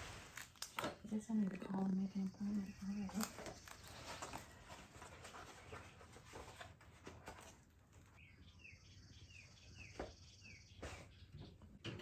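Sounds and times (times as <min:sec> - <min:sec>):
small bird chirping: 0:01.7 - 0:04.4, 0:08.1 - 0:11.8.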